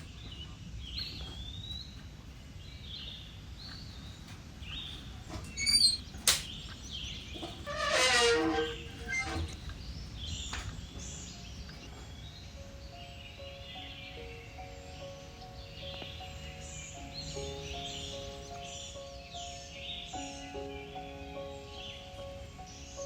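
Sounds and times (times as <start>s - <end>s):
birds chirping: 0.0s - 23.0s
soft piano music: 0.0s - 23.0s
sharp click: 6.2s - 6.6s.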